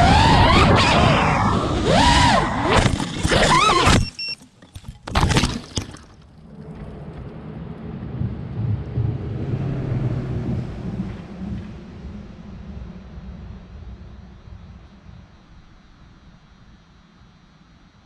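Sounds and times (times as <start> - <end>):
drone motors revving: 0.0 - 4.7
low rumble: 6.2 - 16.9.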